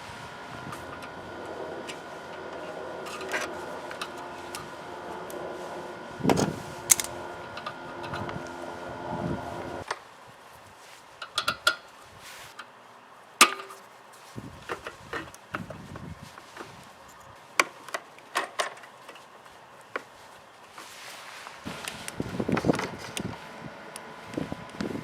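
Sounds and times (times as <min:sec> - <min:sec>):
steady mechanical hum: 0:00.0 - 0:09.9, 0:21.5 - 0:25.0.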